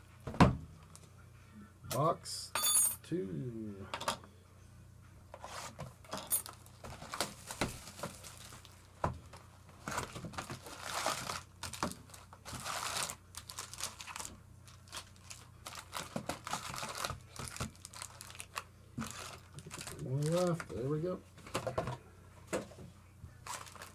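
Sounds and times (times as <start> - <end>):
wrapping crinkling and tearing: 6.4 - 9.0, 9.8 - 20.9, 23.4 - 23.9.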